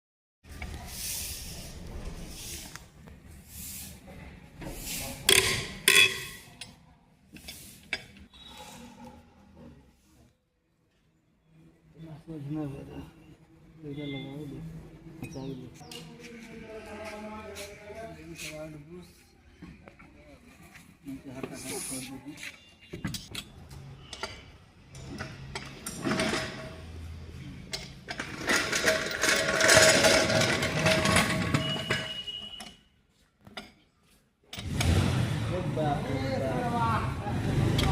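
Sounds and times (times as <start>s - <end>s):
vehicle wheel rubbing and scraping: 25.3s - 32.6s.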